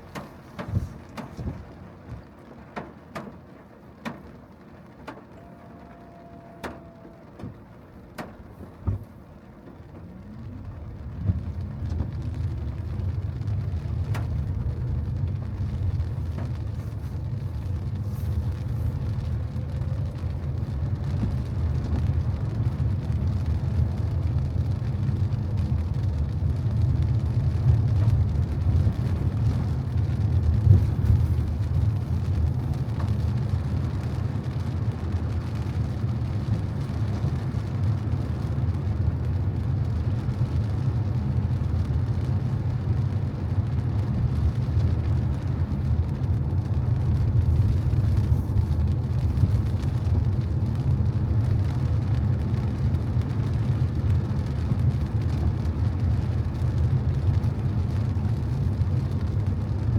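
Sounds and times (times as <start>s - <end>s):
car driving on wet road: 0.0s - 59.9s.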